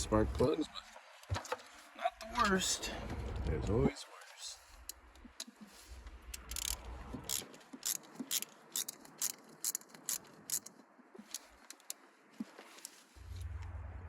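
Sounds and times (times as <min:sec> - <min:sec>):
ratchet wrench clicking: 0:06.2 - 0:12.0.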